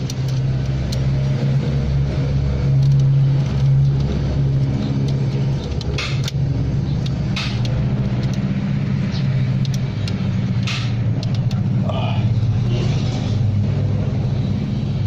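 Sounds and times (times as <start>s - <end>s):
engine-like drone: 0.0s - 15.0s
sharp clicks of metal tools: 2.8s - 11.7s.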